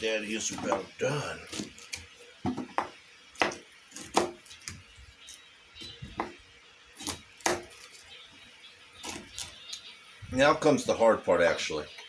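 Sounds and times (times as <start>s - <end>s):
knife chopping on cutting board: 1.5s - 4.8s, 7.0s - 7.9s.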